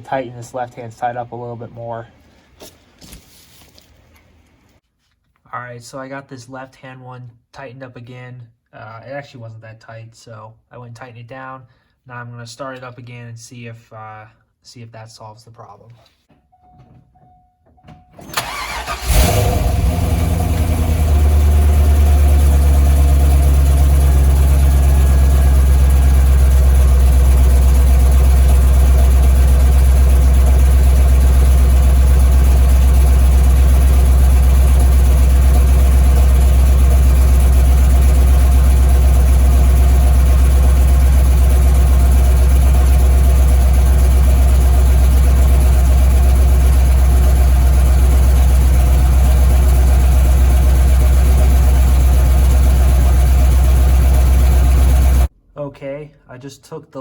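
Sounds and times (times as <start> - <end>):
car engine starting and idling: 18.2 - 55.3.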